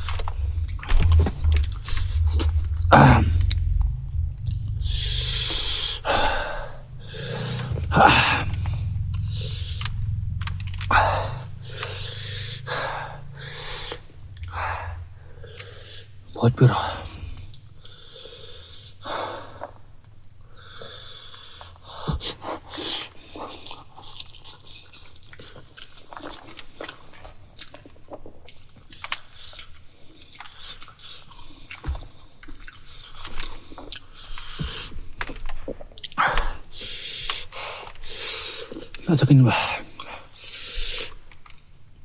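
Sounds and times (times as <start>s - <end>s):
chewing with wet mouth clicks: 23.4s - 35.4s.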